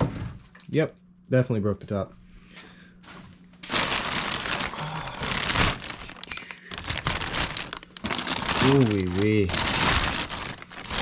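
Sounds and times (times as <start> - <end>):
packaging crinkling: 3.6 - 11.0.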